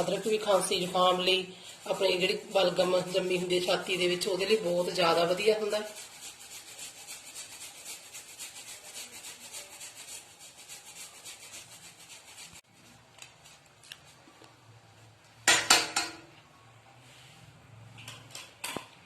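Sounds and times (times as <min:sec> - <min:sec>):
ginger rasping on grater: 0:00.0 - 0:12.6.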